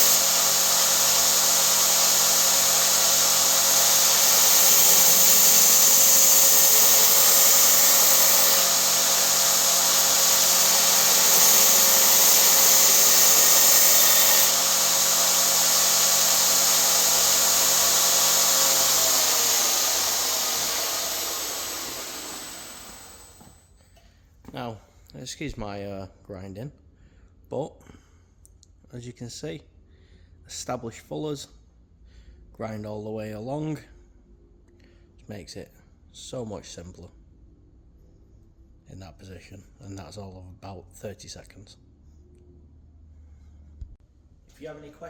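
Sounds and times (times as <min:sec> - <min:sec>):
belt grinder grinding steel: 0:00.0 - 0:23.5.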